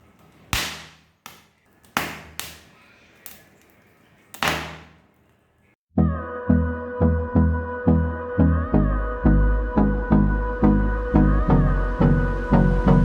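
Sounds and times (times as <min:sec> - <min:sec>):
sharp snapping cracks: 0:00.0 - 0:05.4.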